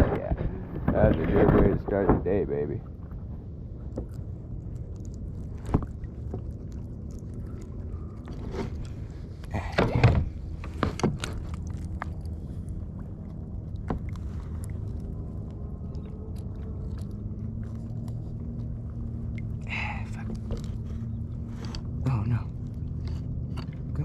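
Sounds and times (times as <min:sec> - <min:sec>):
wind rumble on microphone: 0:00.0 - 0:24.0
fishing gear knocking and scraping: 0:08.3 - 0:12.4.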